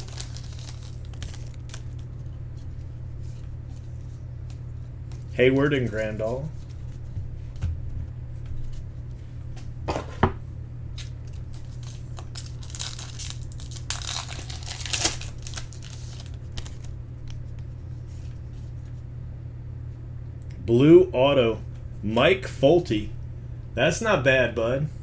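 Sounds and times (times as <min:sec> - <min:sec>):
foil wrapper tearing and crinkling: 0:00.0 - 0:02.1, 0:11.3 - 0:16.9
steady low hum: 0:00.0 - 0:25.0.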